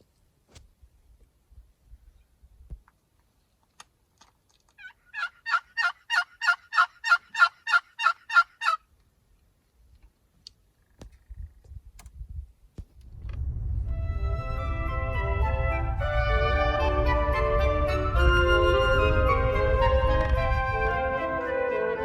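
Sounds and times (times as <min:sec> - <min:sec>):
turkey yelping: 0:04.8 - 0:08.9.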